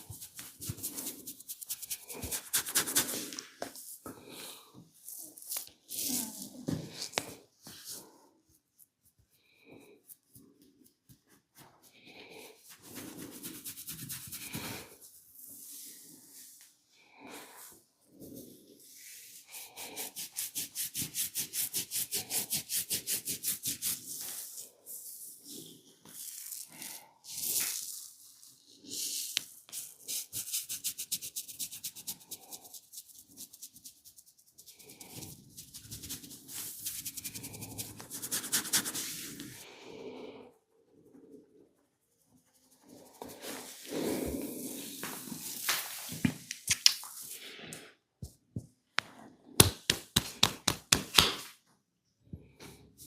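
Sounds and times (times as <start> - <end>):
hands rubbing skin: 0.0 - 9.3, 12.7 - 14.9, 29.3 - 39.6, 42.6 - 47.4, 49.0 - 51.5.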